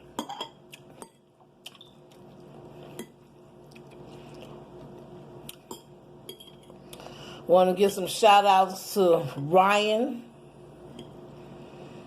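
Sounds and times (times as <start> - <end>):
soft chewing of food: 0.6 - 7.1.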